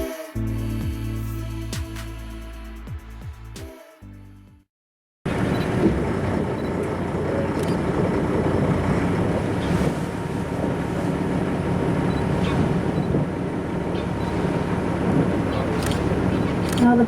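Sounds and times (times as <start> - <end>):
boat engine humming: 5.3 - 17.0.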